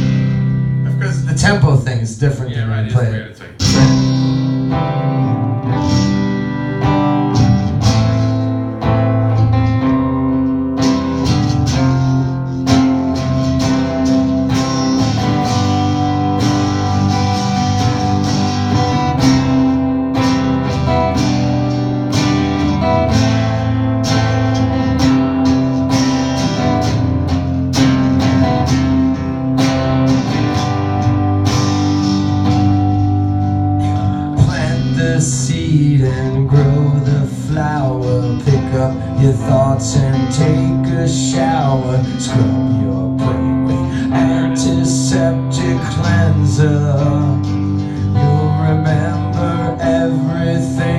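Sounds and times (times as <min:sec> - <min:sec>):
acoustic guitar strumming: 0:00.0 - 0:01.9, 0:03.4 - 0:50.9.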